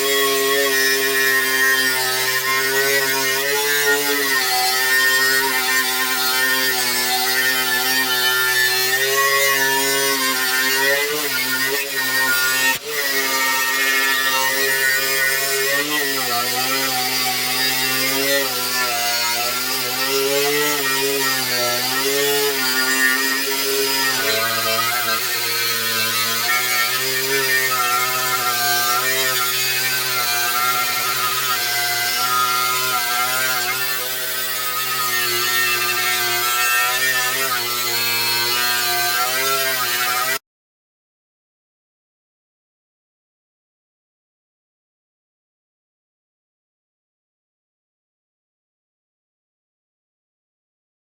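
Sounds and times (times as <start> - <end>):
power tool motor running: 0.0 - 40.4.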